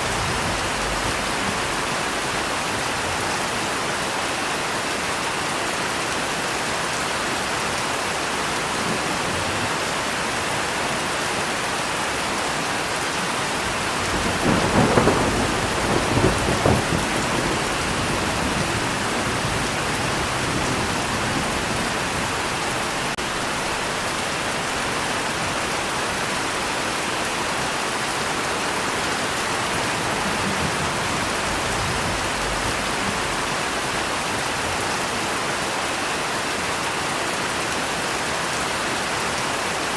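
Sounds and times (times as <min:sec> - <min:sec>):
thunder rumbling: 0:00.0 - 0:03.2, 0:13.6 - 0:26.7, 0:29.1 - 0:34.1
heavy rain falling: 0:00.0 - 0:39.9.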